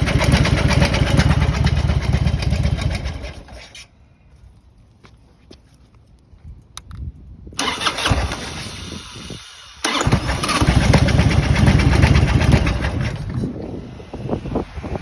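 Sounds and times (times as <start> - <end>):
motorcycle engine running loudly: 0.0 - 3.4, 10.0 - 15.0
starter cranking engine: 0.0 - 3.8, 7.6 - 13.8.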